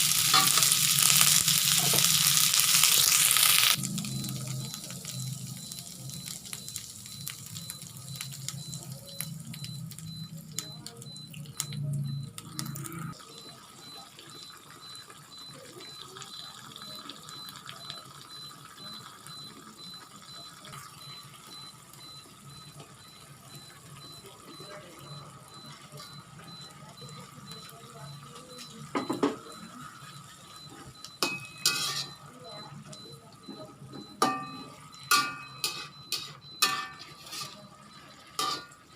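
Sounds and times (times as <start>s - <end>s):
food sizzling in a pan: 0.0s - 10.6s, 11.5s - 32.8s, 34.2s - 38.9s
utensil clinking on pan: 34.2s - 37.6s.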